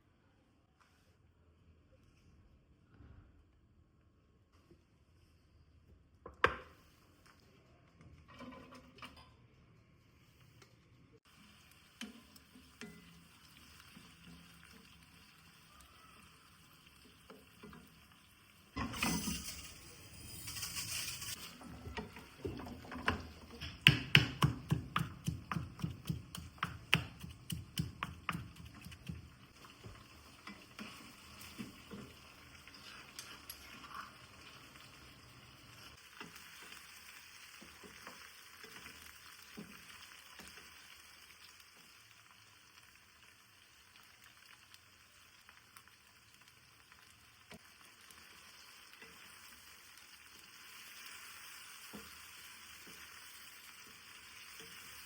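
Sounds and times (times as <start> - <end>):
sizzling: 6.6 - 55.0.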